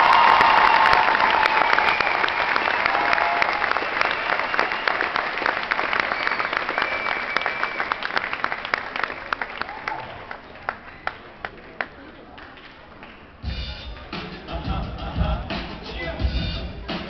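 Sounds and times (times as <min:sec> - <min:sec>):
audience applauding: 0:00.0 - 0:13.2.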